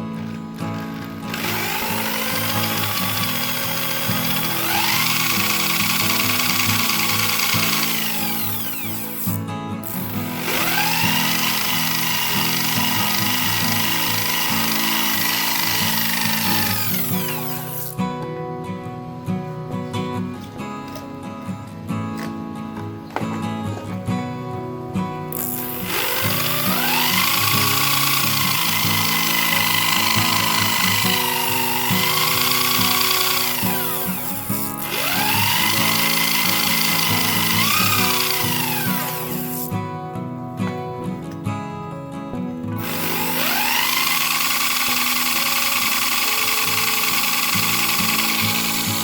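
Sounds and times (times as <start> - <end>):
background music: 0.0 - 49.0
small electric motor whine: 0.8 - 17.9, 25.4 - 39.7, 42.8 - 49.0.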